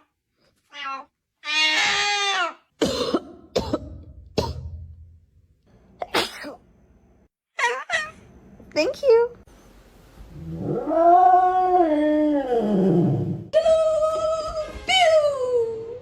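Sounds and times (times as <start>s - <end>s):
cat meowing: 0.7s - 2.6s
harsh cough-like bursts: 2.8s - 4.7s, 6.0s - 6.6s.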